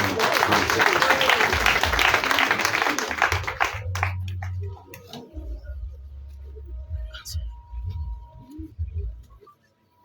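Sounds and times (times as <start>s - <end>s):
crowd applauding: 0.0s - 4.8s.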